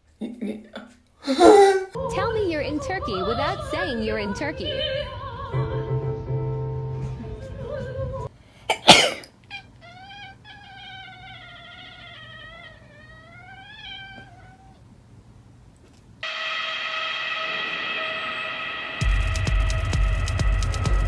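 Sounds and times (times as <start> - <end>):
operatic singing with music: 2.0 - 6.2
cat yowling: 9.5 - 14.8.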